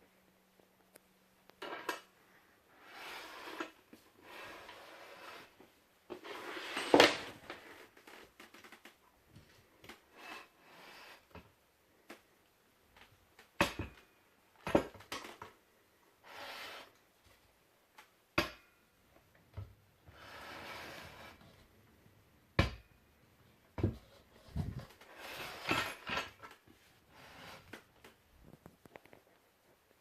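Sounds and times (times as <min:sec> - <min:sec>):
sliding or rustling: 0:02.8 - 0:08.2, 0:23.9 - 0:29.4.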